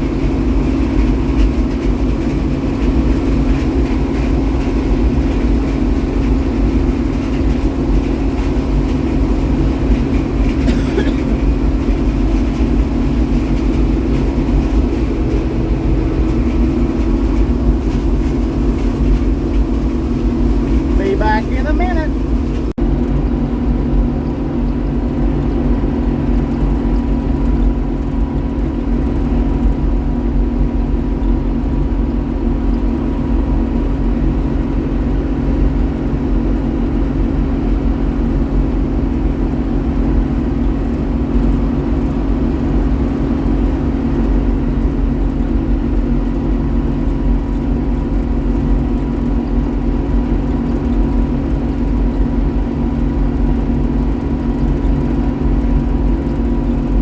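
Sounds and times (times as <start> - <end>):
combine harvester running: 0.0 - 22.7.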